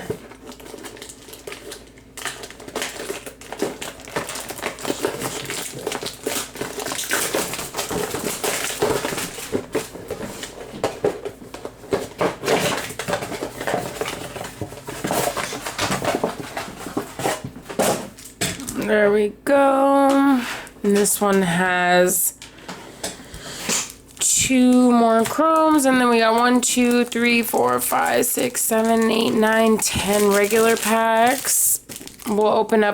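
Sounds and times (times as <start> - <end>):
card pack wrappers tearing: 0.2 - 9.7, 23.6 - 32.6.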